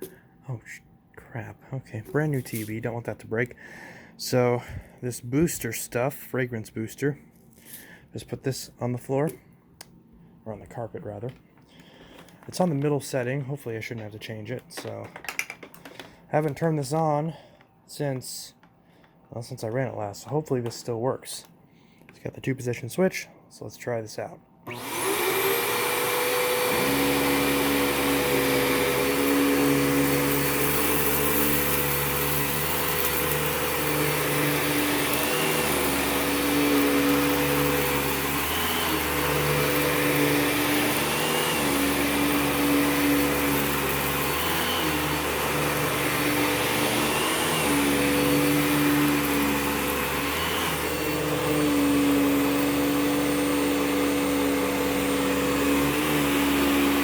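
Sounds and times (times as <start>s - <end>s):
vacuum cleaner motor whine: 24.6s - 57.0s.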